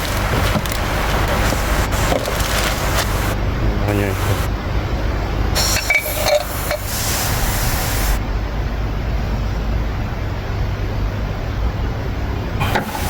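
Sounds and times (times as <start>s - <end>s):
steady low hum: 0.0s - 13.0s
spray-like hiss: 2.8s - 3.4s, 4.1s - 4.5s, 5.6s - 8.2s, 12.6s - 13.0s.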